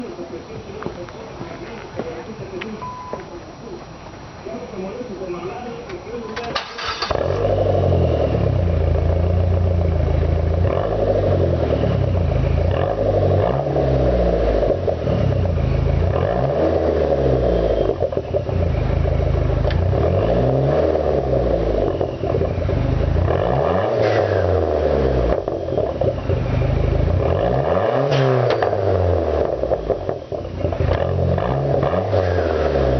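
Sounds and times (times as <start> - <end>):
car engine revving: 6.6 - 32.9.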